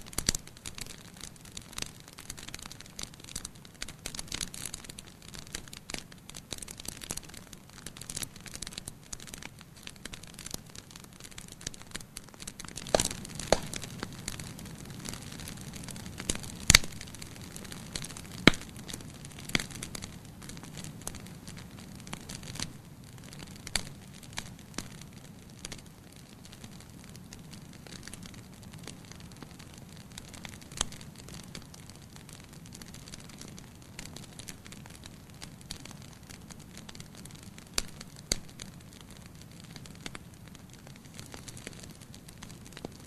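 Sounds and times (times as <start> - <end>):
fire crackling in a fireplace: 0.0 - 43.0
loud pops from fire: 0.0 - 43.0.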